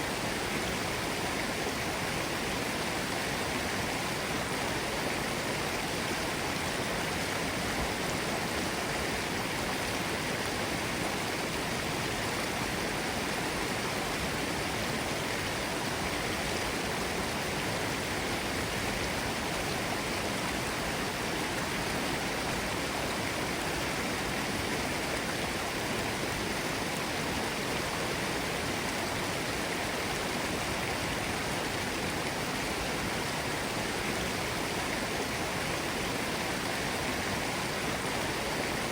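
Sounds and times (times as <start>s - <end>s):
stream running over rocks: 0.0s - 38.9s.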